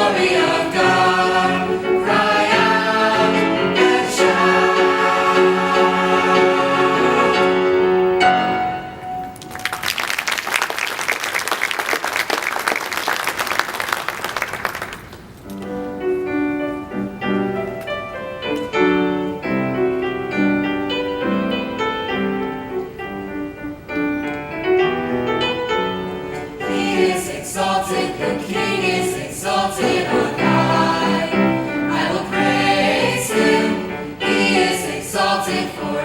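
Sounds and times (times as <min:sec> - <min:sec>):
choir singing held chord: 0:00.0 - 0:09.0, 0:26.4 - 0:36.0
piano playing chords: 0:00.0 - 0:09.7, 0:15.6 - 0:36.0
audience applause: 0:09.2 - 0:15.3.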